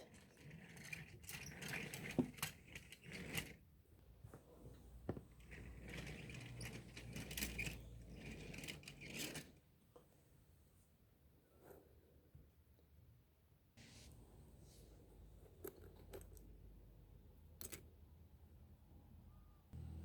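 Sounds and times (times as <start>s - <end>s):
low hum: 19.8s - 20.0s.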